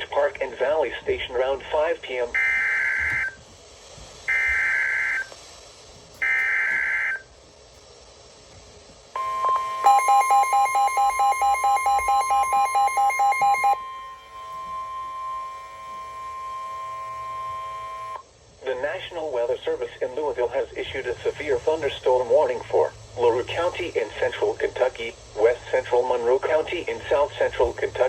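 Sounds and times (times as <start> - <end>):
fast pulsing beep: 9.2 - 18.2
steady alert tone: 9.2 - 18.2
warbling digital data bursts: 9.6 - 13.8.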